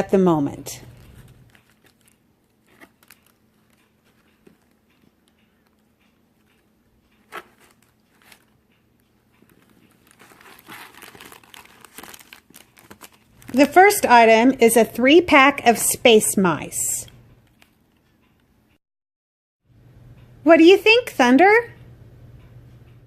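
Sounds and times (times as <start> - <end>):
packaging crinkling and rustling: 0.9 - 4.8, 7.2 - 8.6, 9.4 - 14.0.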